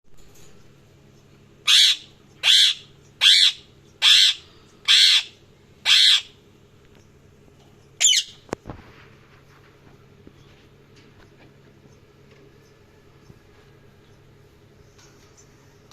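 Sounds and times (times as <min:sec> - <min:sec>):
parrot calling: 0:01.6 - 0:06.4, 0:08.0 - 0:08.4.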